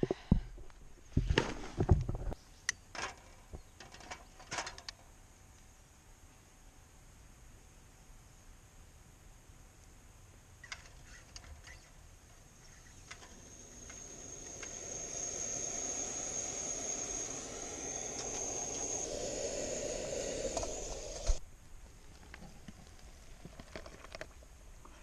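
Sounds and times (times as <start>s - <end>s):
stove hissing rush: 12.8s - 21.4s.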